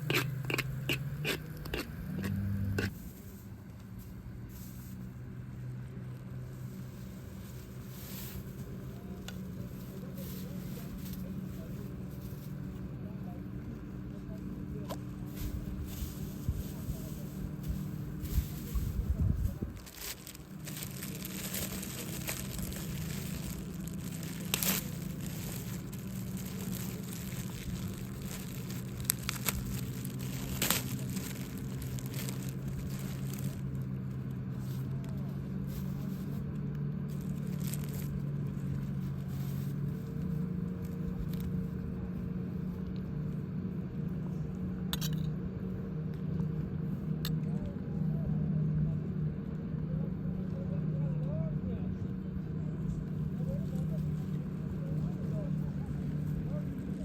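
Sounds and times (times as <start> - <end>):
wood bonfire crackling: 19.7 - 34.5.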